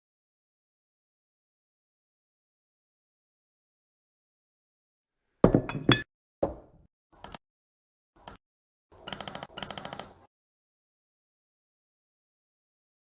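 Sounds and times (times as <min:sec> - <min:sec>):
short clicks: 0:07.2 - 0:07.4, 0:08.2 - 0:08.4, 0:09.0 - 0:10.3.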